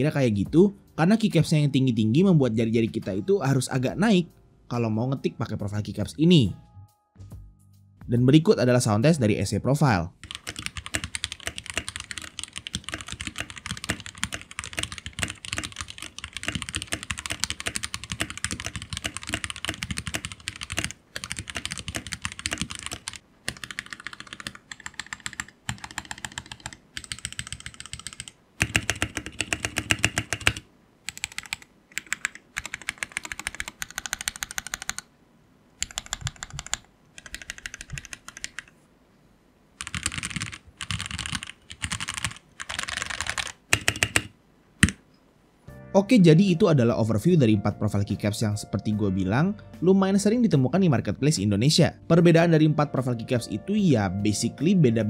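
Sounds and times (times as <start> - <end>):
mechanical keyboard typing: 10.2 - 35.1, 35.8 - 38.7, 39.8 - 45.0.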